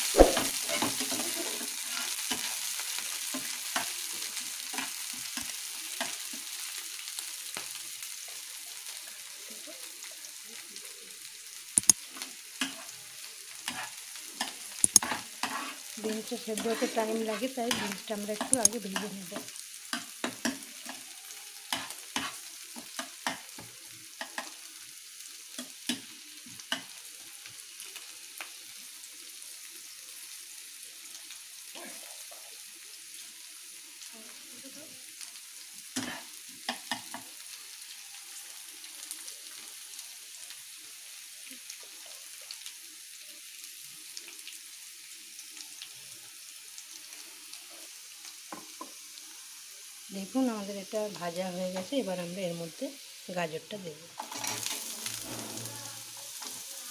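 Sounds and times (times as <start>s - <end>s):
beans sizzling in oil: 0.0s - 56.9s
spatula knocking and scraping pan: 13.7s - 15.8s, 21.7s - 23.4s.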